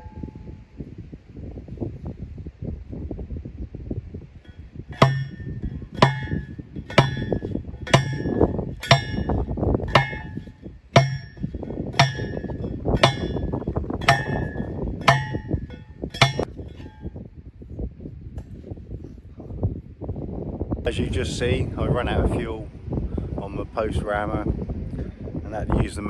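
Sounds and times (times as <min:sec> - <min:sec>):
post driver clanging on fence post: 0:04.9 - 0:17.1.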